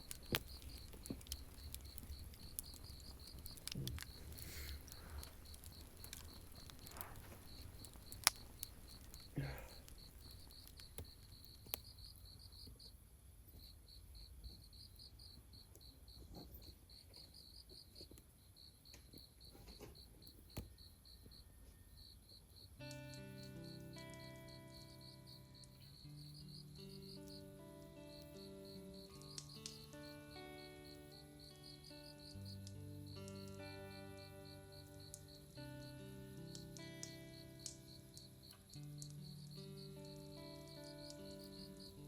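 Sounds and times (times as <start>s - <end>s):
campfire crackling and popping: 0.0s - 13.7s, 22.6s - 42.0s
crickets chirping: 0.0s - 42.0s.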